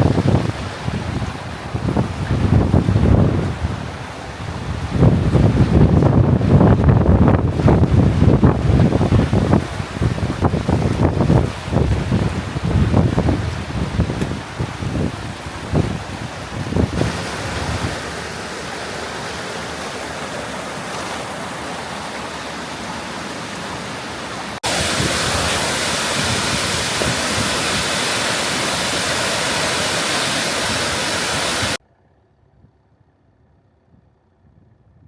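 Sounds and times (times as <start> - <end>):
wind gusts on microphone: 0.0 - 31.8
waterfall rushing: 15.2 - 31.8.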